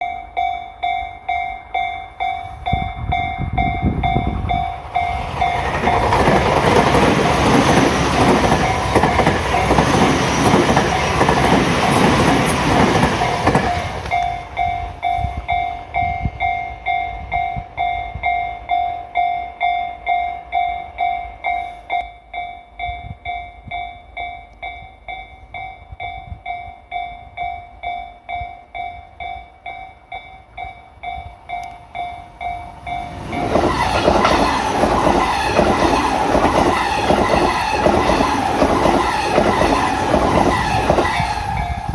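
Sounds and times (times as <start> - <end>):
crossing warning bell dinging: 0.0 - 41.9
train rumble and wheel clatter: 0.0 - 41.9.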